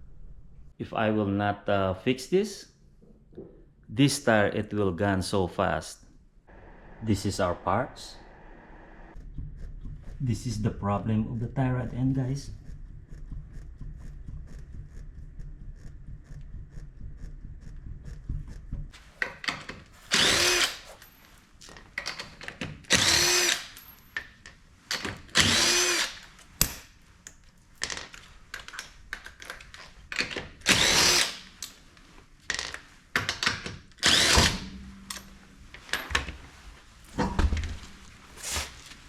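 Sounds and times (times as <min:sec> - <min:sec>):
metal parts clicking and clanking: 0:19.2 - 0:25.5, 0:27.7 - 0:36.5, 0:37.1 - 0:38.2
power tool motor bursts: 0:20.1 - 0:21.0, 0:22.9 - 0:23.8, 0:25.4 - 0:26.2, 0:30.6 - 0:31.5, 0:34.0 - 0:34.7.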